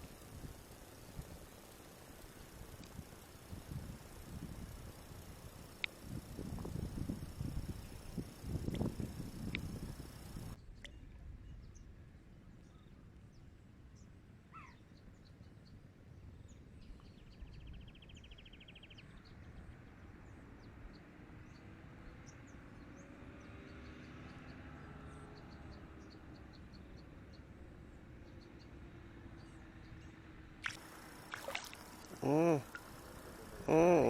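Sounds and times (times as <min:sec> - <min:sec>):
low steady background rumble: 0:00.0 - 0:20.6.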